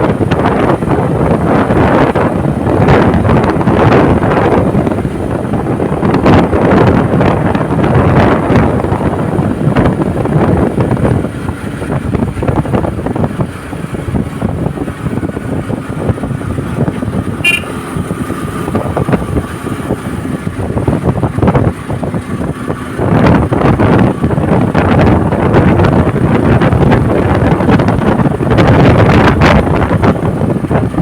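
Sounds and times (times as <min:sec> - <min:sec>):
wind buffeting microphone: 0:00.0 - 0:31.0
brief high tone: 0:17.4 - 0:17.8.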